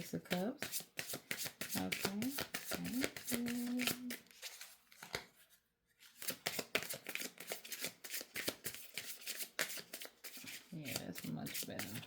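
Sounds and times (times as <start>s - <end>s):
cards being shuffled: 0.3s - 12.0s.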